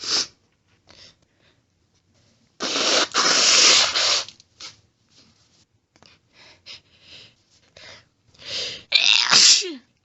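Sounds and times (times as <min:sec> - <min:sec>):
person blowing nose: 0:00.0 - 0:00.4, 0:02.6 - 0:04.8
person sniffing: 0:00.0 - 0:00.4, 0:02.6 - 0:04.8.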